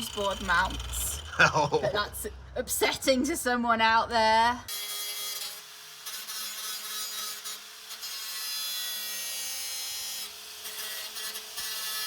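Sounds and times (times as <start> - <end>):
power tool grinding metal: 0.0 - 2.1, 4.7 - 12.0.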